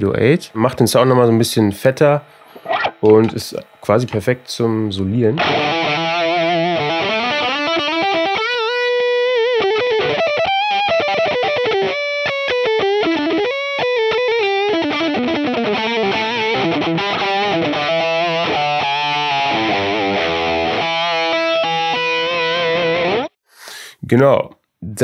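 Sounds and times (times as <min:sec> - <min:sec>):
overdriven electric guitar solo: 0:02.5 - 0:03.2, 0:05.4 - 0:23.4.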